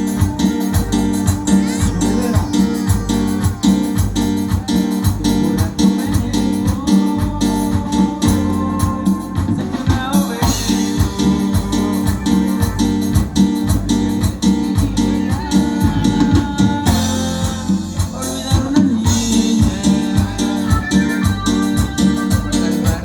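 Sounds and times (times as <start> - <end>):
plucked guitar: 0.0 - 6.3
bass line: 0.0 - 23.0
percussion beat: 0.0 - 23.0.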